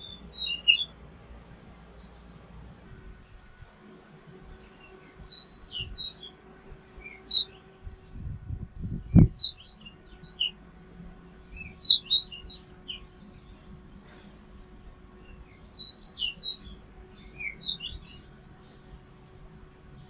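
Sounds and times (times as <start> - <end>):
small birds chirping: 0.0 - 3.7, 4.4 - 20.0
low rumble: 7.8 - 18.7.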